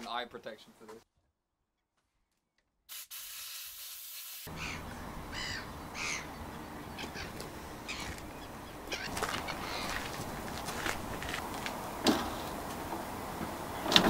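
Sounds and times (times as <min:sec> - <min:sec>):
steady hiss: 0:02.9 - 0:04.6
birds calling harshly: 0:04.5 - 0:11.3.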